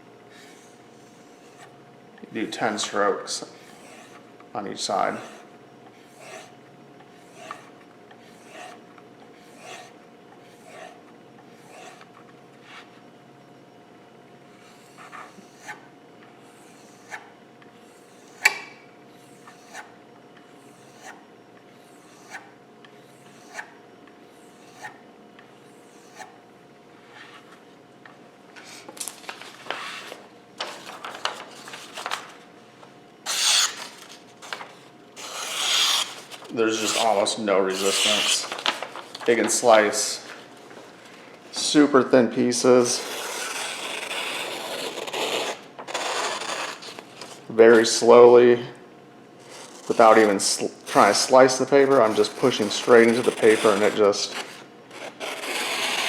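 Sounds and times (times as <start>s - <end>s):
knife slicing paper: 33.3s - 34.6s, 35.2s - 38.9s, 51.9s - 56.0s.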